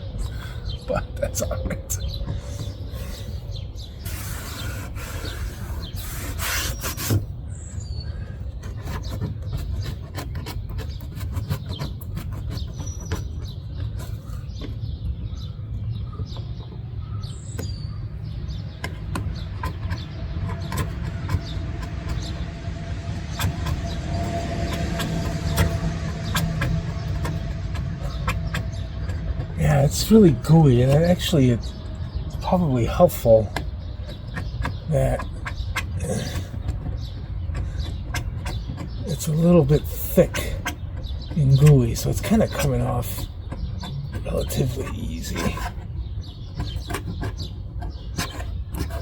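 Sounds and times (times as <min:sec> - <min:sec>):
birds chirping: 0:00.0 - 0:49.0
screwdriver scraping adhesive: 0:04.0 - 0:07.7, 0:08.6 - 0:15.4, 0:17.6 - 0:22.5.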